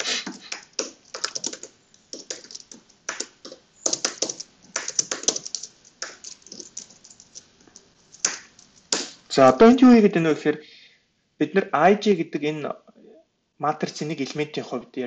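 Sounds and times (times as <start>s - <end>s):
typing on computer keyboard: 0.3s - 9.0s.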